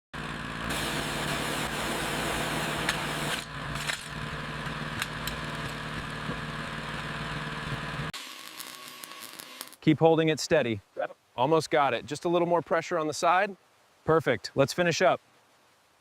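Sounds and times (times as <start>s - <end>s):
motor running: 0.2s - 9.8s.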